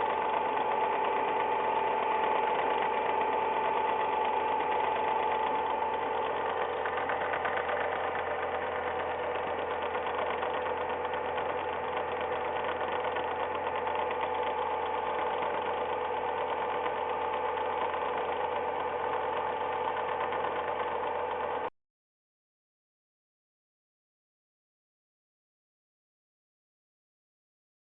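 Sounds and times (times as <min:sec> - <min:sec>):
car engine idling: 0:00.0 - 0:21.7
fast engine ticking: 0:00.0 - 0:21.7.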